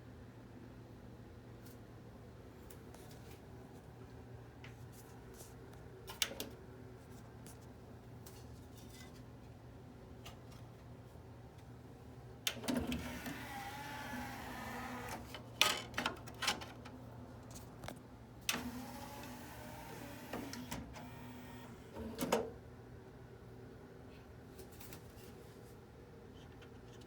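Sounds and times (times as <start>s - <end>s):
mechanism clicks and clunks: 12.5s - 22.6s
small motor whirring: 13.0s - 15.3s, 18.6s - 22.1s.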